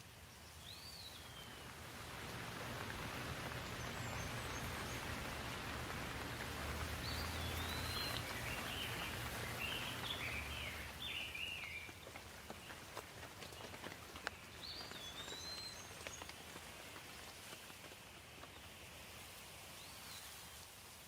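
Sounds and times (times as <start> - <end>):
light rain falling: 0.0 - 21.0
bird chirping: 0.4 - 12.8, 13.5 - 16.4.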